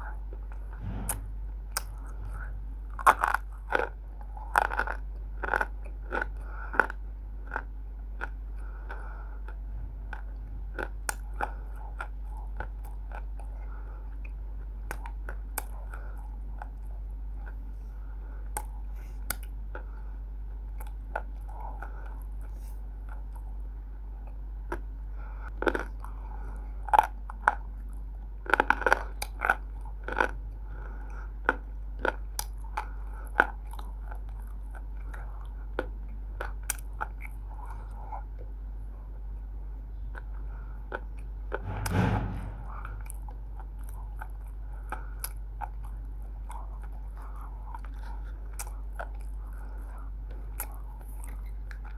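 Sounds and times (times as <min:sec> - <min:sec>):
steady low hum: 0:00.0 - 0:05.4, 0:41.4 - 0:43.6.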